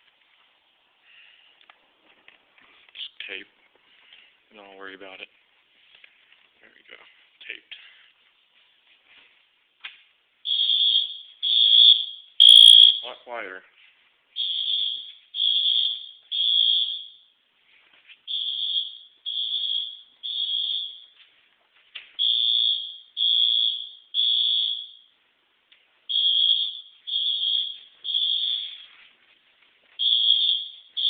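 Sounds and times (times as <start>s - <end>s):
muffled fire alarm beeps: 10.4s - 13.2s, 14.3s - 17.4s, 18.2s - 21.4s, 22.1s - 25.2s, 26.1s - 29.1s, 29.9s - 31.0s.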